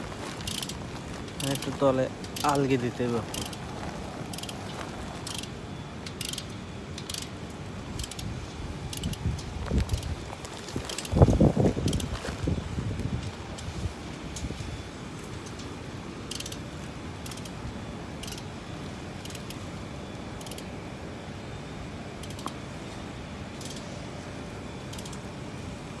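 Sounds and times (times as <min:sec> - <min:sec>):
steady background noise: 0:00.0 - 0:26.0
light metallic clicking of tools: 0:04.3 - 0:08.3, 0:08.9 - 0:10.2, 0:15.2 - 0:17.6, 0:19.2 - 0:19.6.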